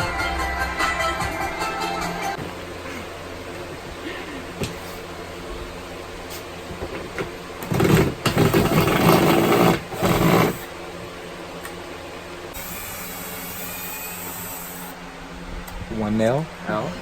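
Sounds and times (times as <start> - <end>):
fan hum: 0.0 - 17.0
power drill running: 7.6 - 10.7, 12.6 - 15.0.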